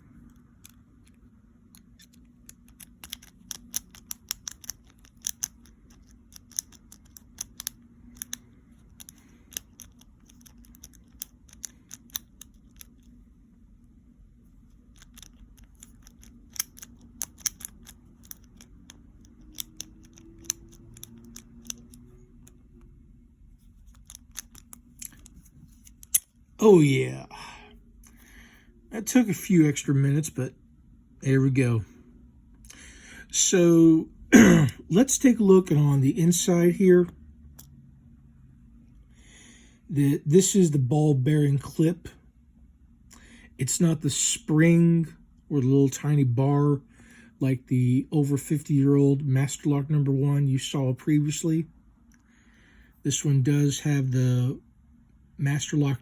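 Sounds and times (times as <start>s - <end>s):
faint low hum: 0.0s - 56.0s
lock pick clicking in padlock: 2.0s - 8.4s, 15.0s - 22.0s.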